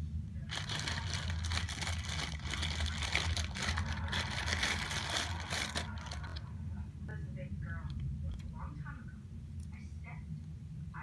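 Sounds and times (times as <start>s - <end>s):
steady low hum: 0.0s - 11.0s
plastic packaging crinkling: 0.5s - 6.5s.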